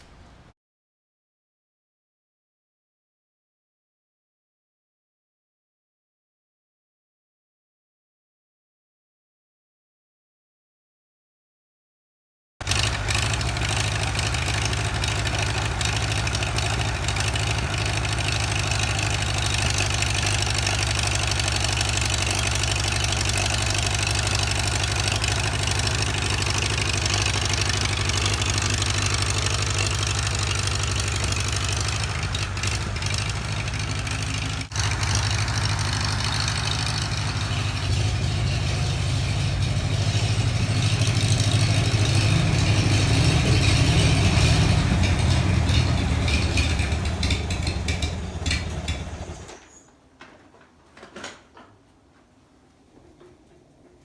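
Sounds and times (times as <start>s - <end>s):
engine idling: 12.6s - 49.6s.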